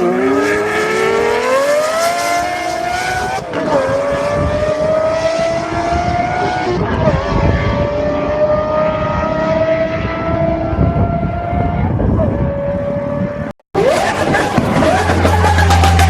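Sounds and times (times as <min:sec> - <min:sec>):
sports car engine running: 0:13.8 - 0:16.0.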